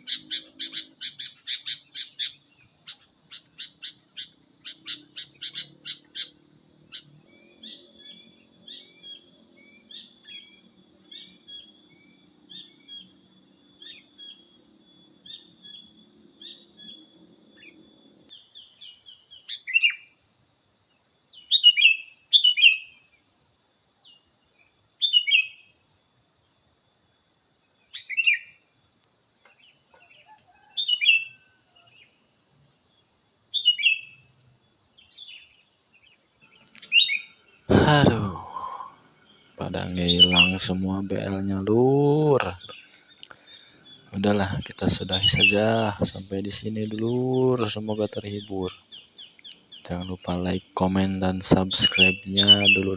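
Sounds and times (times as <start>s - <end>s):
high insect drone: 0.0s - 52.9s
songbird chirps: 20.9s - 23.0s, 24.0s - 25.7s, 27.8s - 28.6s, 33.0s - 52.9s.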